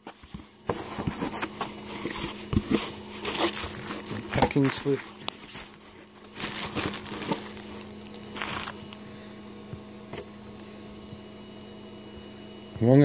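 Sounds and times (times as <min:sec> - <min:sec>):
paper and packaging rustling: 0:00.0 - 0:09.0
faint steady hum: 0:00.0 - 0:13.0.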